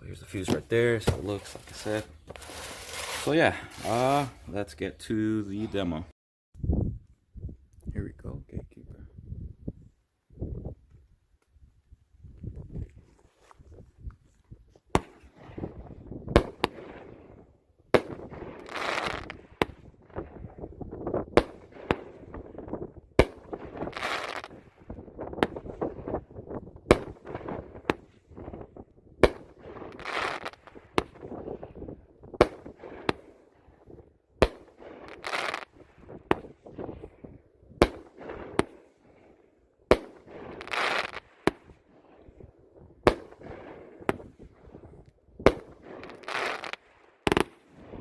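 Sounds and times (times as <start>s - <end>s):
firework sharp reports: 0.0s - 4.7s, 14.9s - 33.8s, 34.4s - 42.0s
firework crackling burst: 1.2s - 4.4s, 18.0s - 19.8s, 23.2s - 26.0s, 29.2s - 31.4s, 39.9s - 41.7s.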